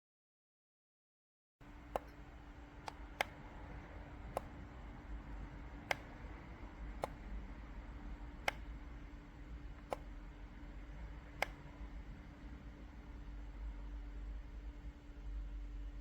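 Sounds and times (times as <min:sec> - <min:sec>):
sharp single clicks: 0:01.6 - 0:03.6, 0:04.2 - 0:04.7, 0:05.7 - 0:07.4, 0:08.3 - 0:08.9, 0:09.8 - 0:10.2, 0:11.2 - 0:11.8
steady low hum: 0:01.6 - 0:16.0.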